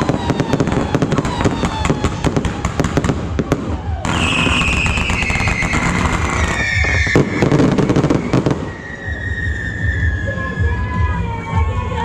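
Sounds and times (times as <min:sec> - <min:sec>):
fireworks crackling: 0:00.0 - 0:10.8
high whistling tone sliding down: 0:04.2 - 0:10.8.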